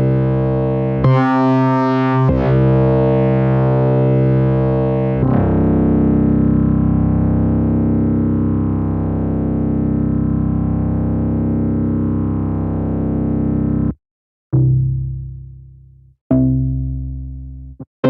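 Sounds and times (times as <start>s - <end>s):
synthesizer held chord: 0.0s - 13.8s
struck keyboard chords: 0.0s - 13.9s.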